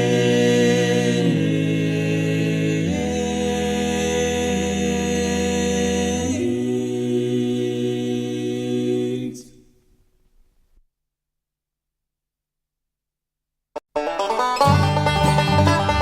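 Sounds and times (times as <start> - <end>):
group singing vocal harmony: 0.0 - 9.6.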